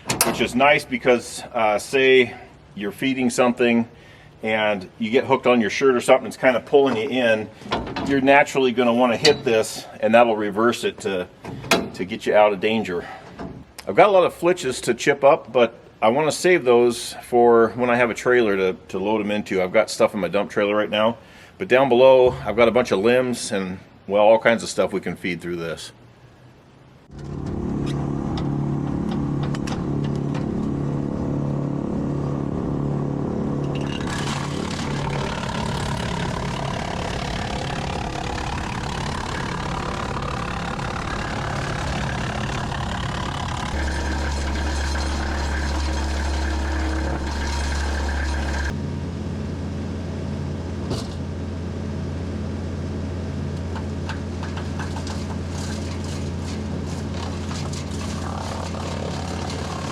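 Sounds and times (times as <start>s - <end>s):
tractor engine running: 27.1s - 48.8s, 53.6s - 59.9s
wood chipper whine: 27.1s - 59.9s.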